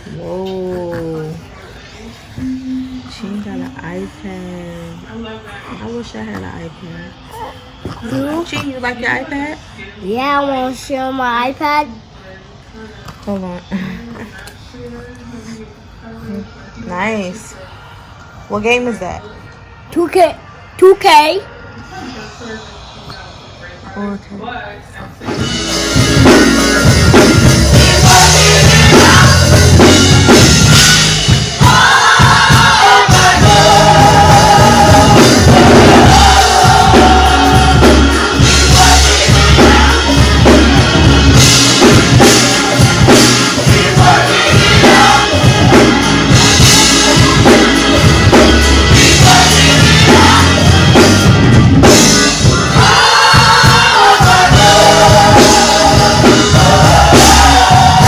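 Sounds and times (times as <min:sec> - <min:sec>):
gospel music with singing: 0:00.0 - 0:10.9, 0:21.7 - 0:58.0
drum kit beat: 0:00.8 - 0:04.2, 0:25.2 - 0:58.0
choir-like vocals: 0:25.0 - 0:58.0.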